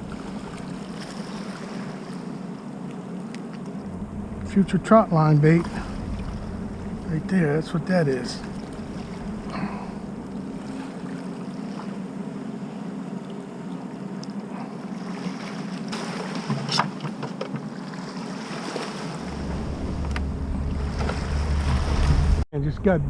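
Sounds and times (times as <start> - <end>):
wind rumble on microphone: 0.0 - 1.4, 3.6 - 12.0, 19.1 - 23.0
wind and water: 0.0 - 22.4
ship engine low drone: 0.0 - 23.0.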